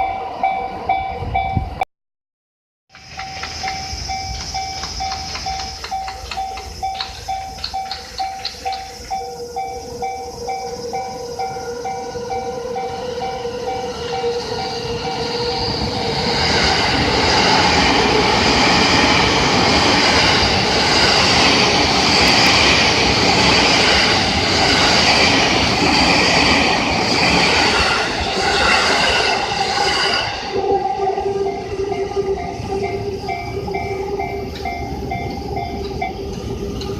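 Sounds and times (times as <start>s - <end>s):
electric train passing: 0.0s - 1.8s, 2.9s - 36.9s
level crossing warning bell: 0.0s - 1.8s, 2.9s - 18.6s, 28.1s - 36.9s.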